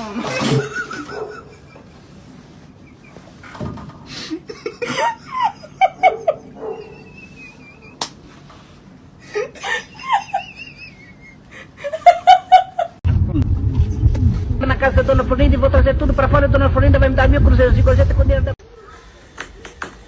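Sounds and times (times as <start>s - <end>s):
person laughing: 0.2s - 2.2s, 4.1s - 8.1s, 9.2s - 13.5s.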